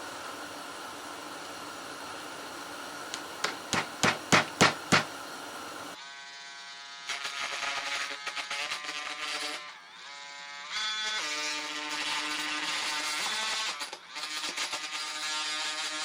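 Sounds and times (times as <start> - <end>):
hammer tapping nail: 3.1 - 5.1.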